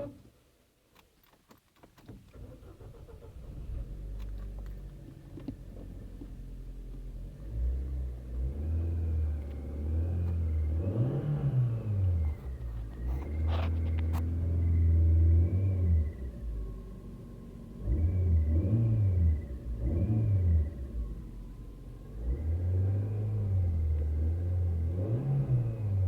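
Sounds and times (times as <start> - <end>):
car engine starting and running: 2.2 - 26.0
engine revving: 7.3 - 16.6, 17.8 - 21.4, 22.1 - 26.0.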